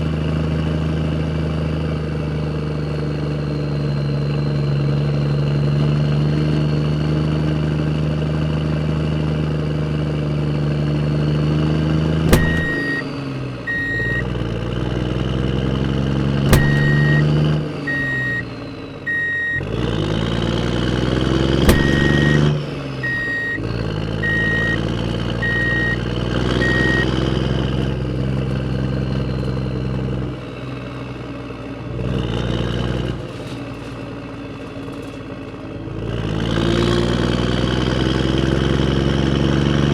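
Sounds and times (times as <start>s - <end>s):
truck engine revving: 9.8s - 30.4s
sharp click: 12.3s - 14.2s, 16.5s - 18.8s, 21.6s - 23.7s
reversing alarm beeping: 12.3s - 14.4s, 16.5s - 19.8s, 21.6s - 27.1s.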